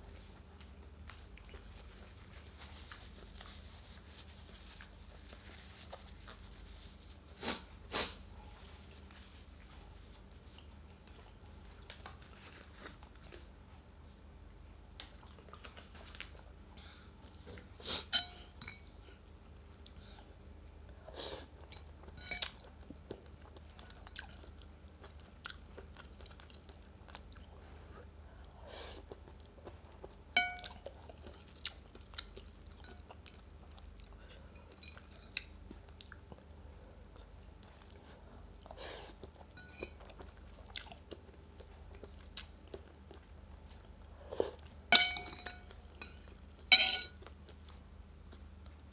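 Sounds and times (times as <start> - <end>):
close chewing of noodle soup: 0.0 - 8.3, 15.0 - 44.9, 45.7 - 48.9
cutlery clinking against bowl: 18.1 - 18.9, 21.7 - 22.6, 30.4 - 30.8, 39.5 - 40.0, 44.9 - 47.2.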